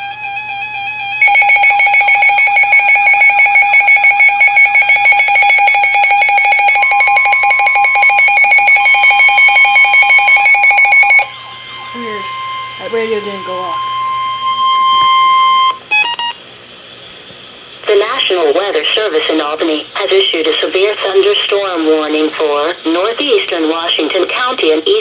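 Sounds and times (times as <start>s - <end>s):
pulsing two-tone alarm beep: 0.0s - 16.4s
steady alarm tone: 0.0s - 16.5s.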